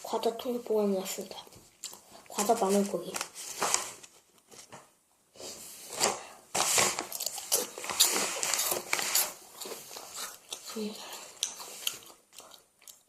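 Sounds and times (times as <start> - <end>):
snack packaging crackling: 6.7 - 13.0.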